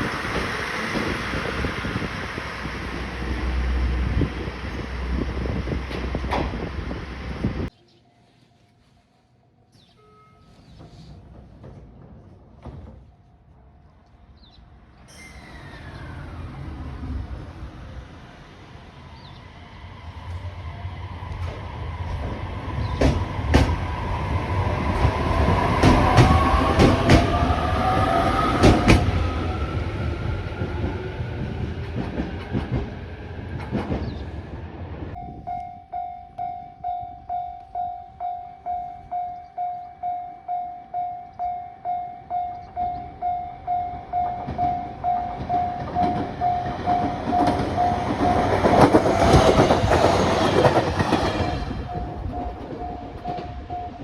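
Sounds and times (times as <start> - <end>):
train motor whine: 15.0 - 34.2
train wheels clattering over joints: 21.4 - 29.5, 30.6 - 34.6, 43.8 - 54.0
level crossing alarm bell: 35.2 - 48.6, 51.7 - 54.0.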